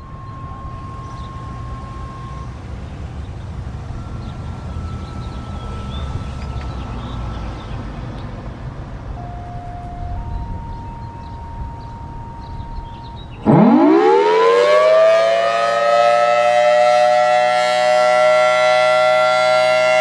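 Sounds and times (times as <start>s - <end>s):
faint high chirps: 0.0s - 3.4s, 9.2s - 13.5s
low outdoor rumble: 0.0s - 13.5s.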